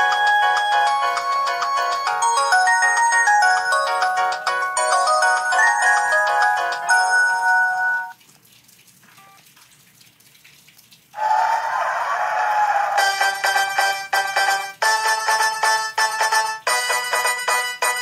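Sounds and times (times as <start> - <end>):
phone ringtone melody: 0.0 - 8.2, 13.0 - 18.0
rushing ringtone over held tone: 0.0 - 8.2, 13.0 - 18.0.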